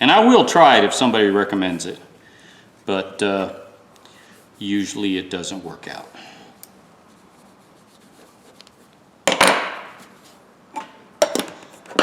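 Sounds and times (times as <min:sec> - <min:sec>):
rubbing scrape: 0:07.0 - 0:09.0.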